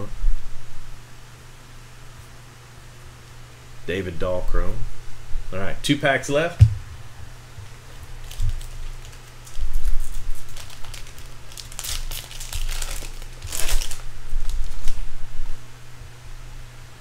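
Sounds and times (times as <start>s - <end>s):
plastic wrapper crinkling and tearing: 7.9s - 15.1s.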